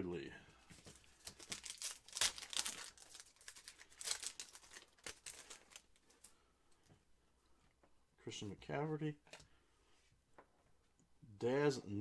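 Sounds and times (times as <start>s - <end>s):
foil wrapper crinkling and tearing: 0.8s - 6.3s.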